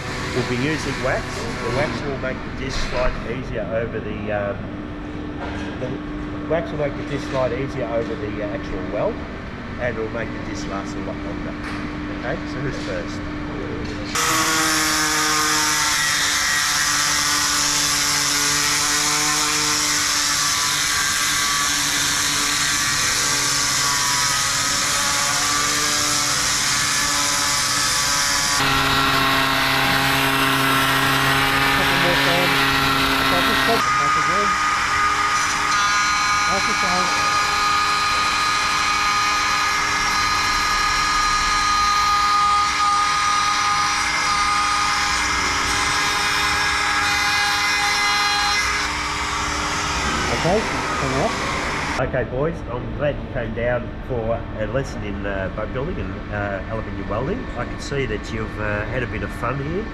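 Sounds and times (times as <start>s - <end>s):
sander motor whine: 14.1s - 19.9s, 23.0s - 52.0s
disc sander grinding metal: 14.1s - 52.0s.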